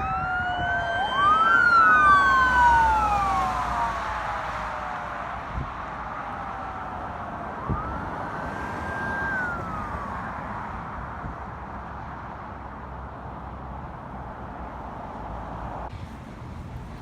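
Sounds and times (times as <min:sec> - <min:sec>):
siren wailing: 0:00.0 - 0:10.9
street traffic noise: 0:00.0 - 0:17.0.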